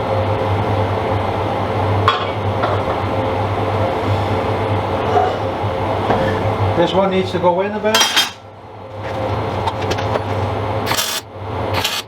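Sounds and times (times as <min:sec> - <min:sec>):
workshop hum: 0:00.0 - 0:12.0
metal clank of steel workpieces: 0:08.0 - 0:08.4.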